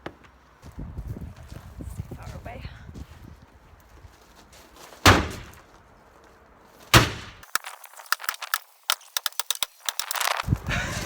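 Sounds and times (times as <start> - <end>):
sledgehammer striking shed: 4.8 - 5.8, 6.8 - 10.4
panel splintering and debris falling: 7.0 - 10.4.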